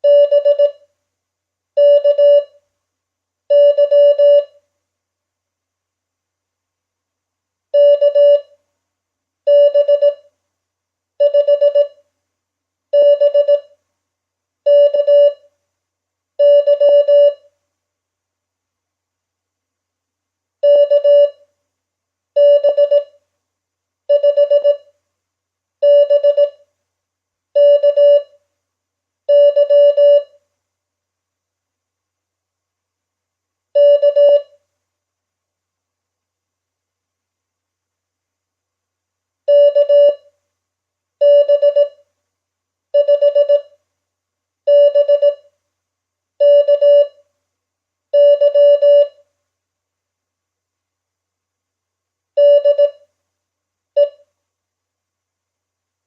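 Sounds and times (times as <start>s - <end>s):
morse code beeps: 0.0s - 0.7s, 1.8s - 2.4s, 3.5s - 4.5s, 11.2s - 11.9s, 14.7s - 15.4s, 16.4s - 17.4s, 20.7s - 21.3s, 22.4s - 23.0s, 24.1s - 24.8s, 27.6s - 28.2s, 29.3s - 30.3s, 39.5s - 40.2s, 41.2s - 41.9s, 43.0s - 43.6s, 44.7s - 45.4s, 46.4s - 47.1s, 48.2s - 49.1s, 52.4s - 52.9s.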